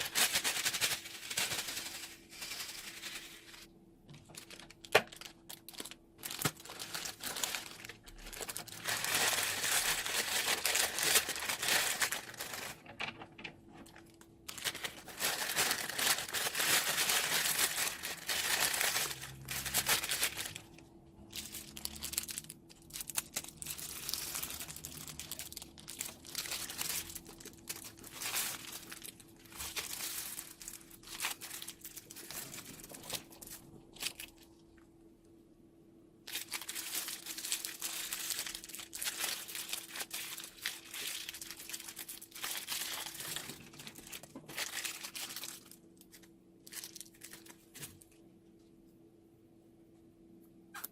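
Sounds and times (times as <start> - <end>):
faint steady hum: 0.0 - 50.9
slime crackling and squishing: 36.3 - 47.6.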